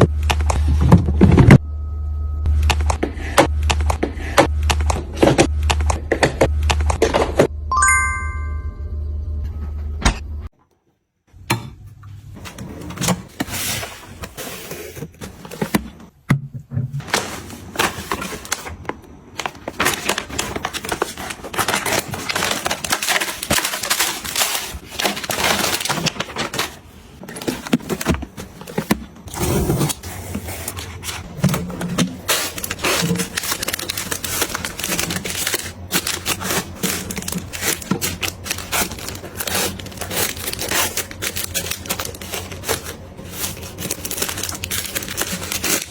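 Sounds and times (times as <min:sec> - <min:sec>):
plastic packaging being handled: 0:17.0 - 0:45.9.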